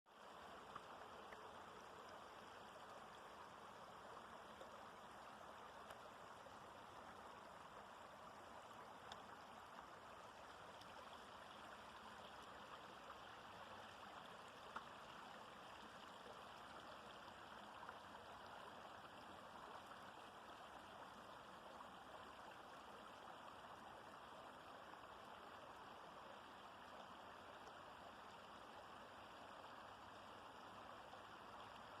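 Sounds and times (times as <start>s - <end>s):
stream flowing: 0.1s - 32.0s.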